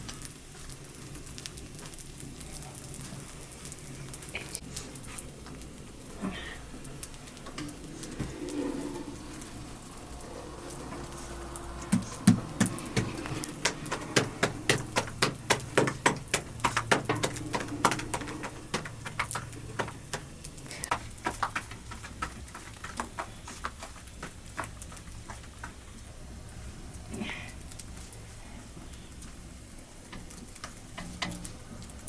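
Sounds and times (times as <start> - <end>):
rapid sharp knocks: 11.9 - 24.4.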